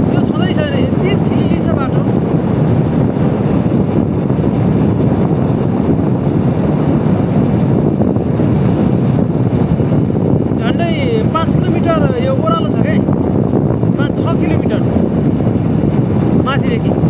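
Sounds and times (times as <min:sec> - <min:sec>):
wind rush over microphone: 0:00.0 - 0:17.0.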